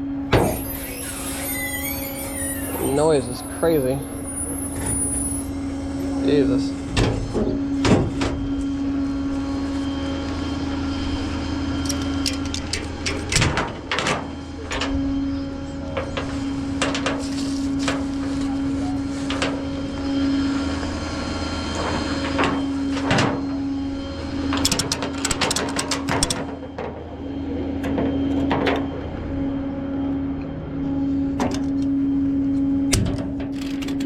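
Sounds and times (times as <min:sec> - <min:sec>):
truck engine humming: 0:00.0 - 0:07.8.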